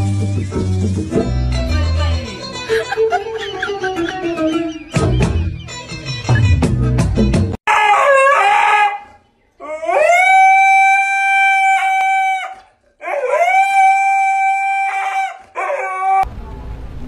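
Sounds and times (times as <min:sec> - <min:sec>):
dog howling: 0:07.7 - 0:16.3.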